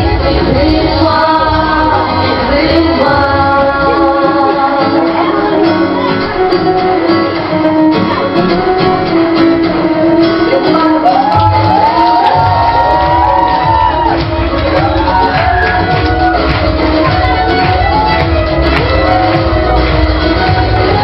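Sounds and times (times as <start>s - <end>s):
people singing: 0.0s - 6.1s
instrumental backing music: 0.0s - 21.0s.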